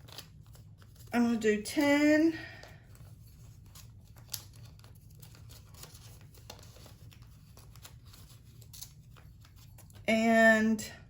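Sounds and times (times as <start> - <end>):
paper rustling and crinkling: 0.0 - 1.9, 2.5 - 10.1.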